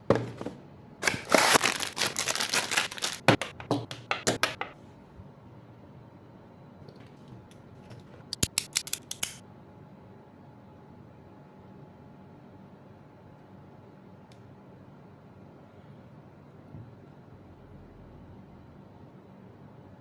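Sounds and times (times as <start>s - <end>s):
packaging being torn open: 1.0s - 3.6s, 8.4s - 9.4s
sharp clicks and rustles: 7.9s - 9.4s.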